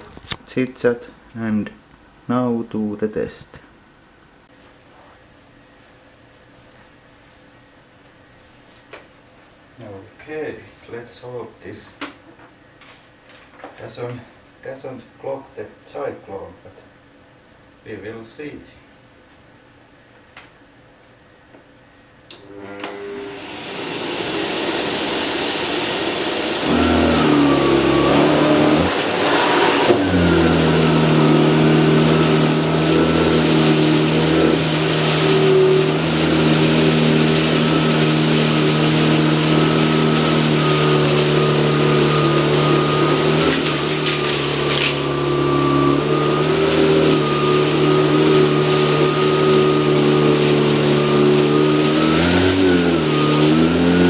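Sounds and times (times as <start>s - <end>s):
vacuum cleaner motor whine: 22.3s - 54.0s.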